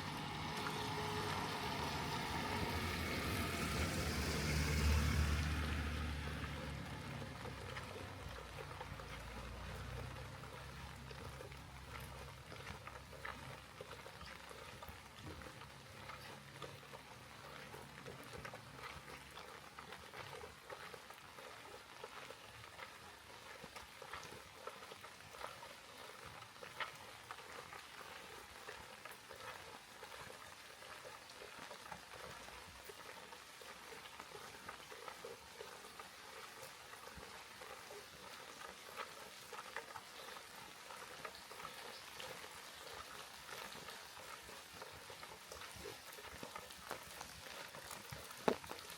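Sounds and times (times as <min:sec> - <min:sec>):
light rain pattering: 0:00.0 - 0:48.9.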